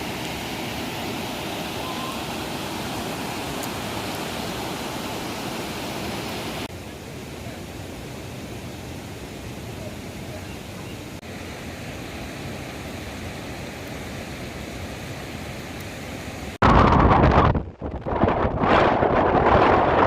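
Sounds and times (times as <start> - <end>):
river rushing: 0.0 - 16.6
wind on microphone: 16.6 - 20.0.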